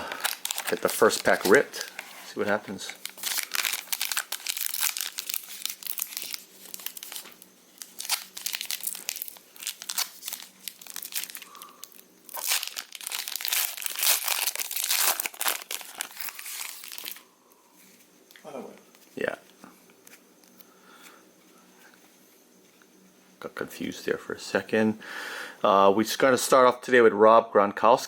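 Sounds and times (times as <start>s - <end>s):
foil pack tearing and crinkling: 0.0s - 17.2s.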